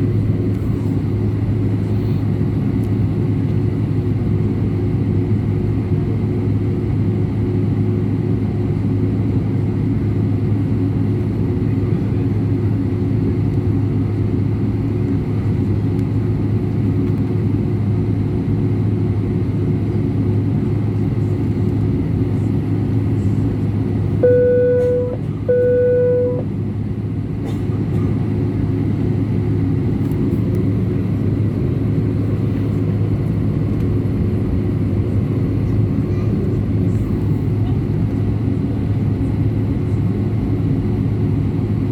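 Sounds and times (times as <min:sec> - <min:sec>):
airliner cabin rumble: 0:00.0 - 0:41.9.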